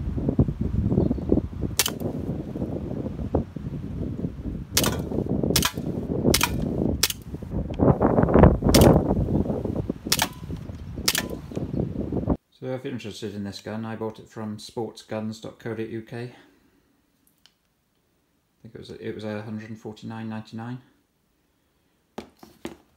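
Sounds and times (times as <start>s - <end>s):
wind buffeting microphone: 0.0s - 12.4s
bb pistol shots: 1.8s - 2.1s, 4.8s - 7.3s, 8.7s - 9.0s, 10.1s - 11.4s.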